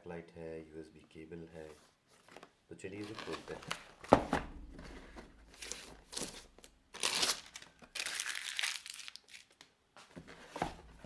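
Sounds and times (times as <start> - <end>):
packaging crinkling and rustling: 2.3 - 4.2, 5.5 - 9.7.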